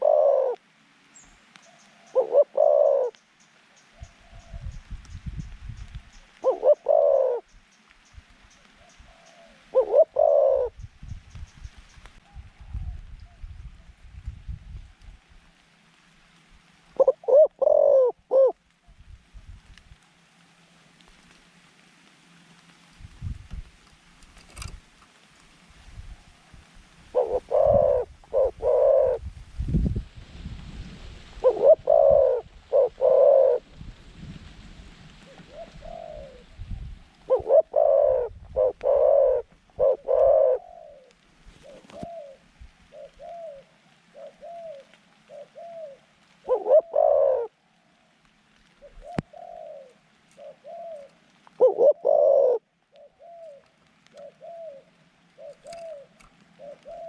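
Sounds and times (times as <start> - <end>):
dove cooing: 0.0 - 0.6, 1.7 - 3.2, 6.3 - 7.6, 8.8 - 10.8, 16.9 - 19.0, 27.1 - 29.3, 31.4 - 33.7, 35.2 - 48.1, 48.7 - 57.0.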